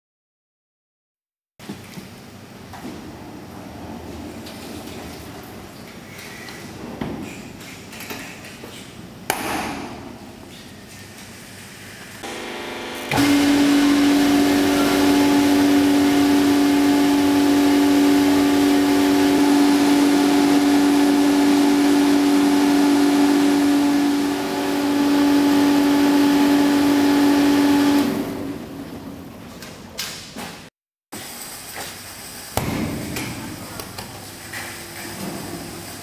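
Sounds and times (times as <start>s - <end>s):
pump humming: 12.2s - 29.0s.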